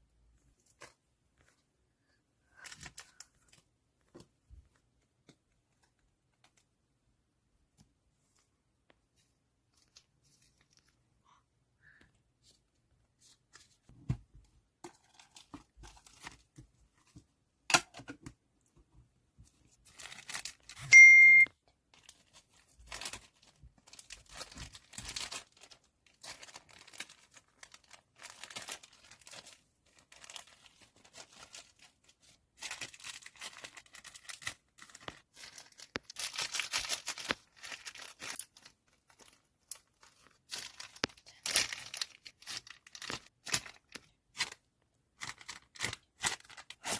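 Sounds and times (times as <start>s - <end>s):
plastic sleeves crinkling: 9.1s - 11.1s, 14.8s - 17.2s, 19.5s - 21.0s, 21.7s - 46.9s
high ding: 20.9s - 21.5s.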